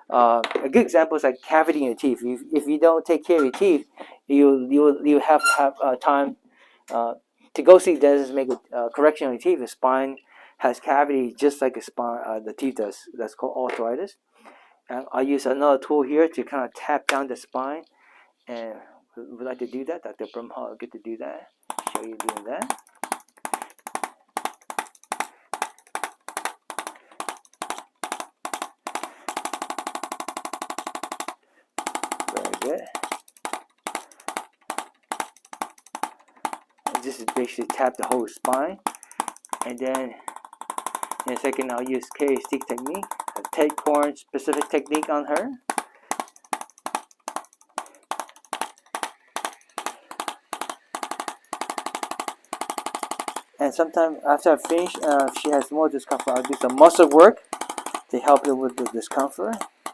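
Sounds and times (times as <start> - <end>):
electric instrument rapid tapping: 21.6 - 59.9.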